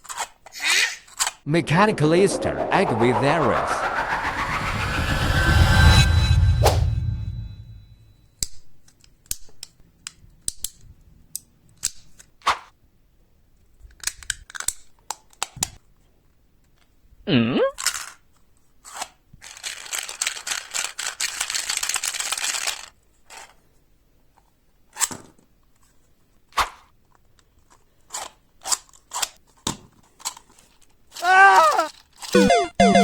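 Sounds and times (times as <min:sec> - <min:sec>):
rising squeak: 0:01.9 - 0:08.1
plastic parts clicking and snapping: 0:08.8 - 0:12.4, 0:13.8 - 0:15.8, 0:27.1 - 0:31.2.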